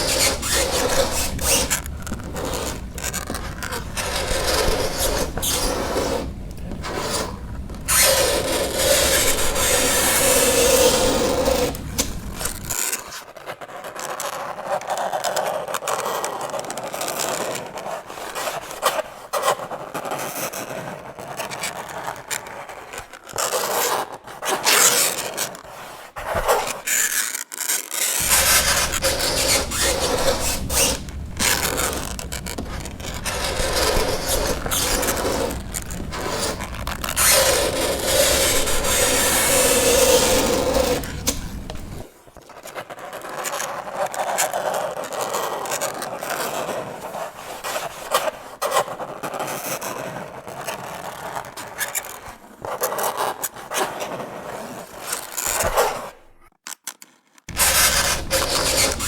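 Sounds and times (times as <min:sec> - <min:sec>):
fingernails scraping chalkboard: 0:00.0 - 0:12.8, 0:28.0 - 0:42.1, 0:57.5 - 0:59.0.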